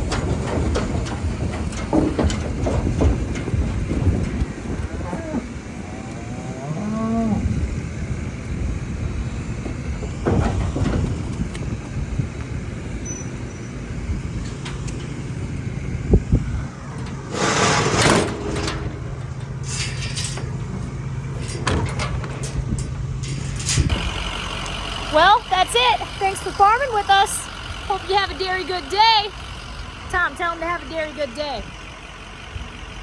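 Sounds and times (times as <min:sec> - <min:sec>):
vehicle engine running: 0:00.0 - 0:33.0
cow mooing: 0:04.8 - 0:07.9.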